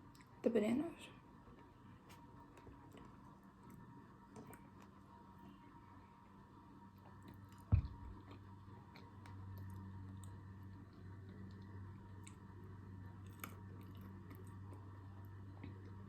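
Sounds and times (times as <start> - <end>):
steady low hum: 0.0 - 16.0
close-up chewing with wet smacks: 1.5 - 5.4, 6.2 - 16.0
low thump: 7.7 - 8.2.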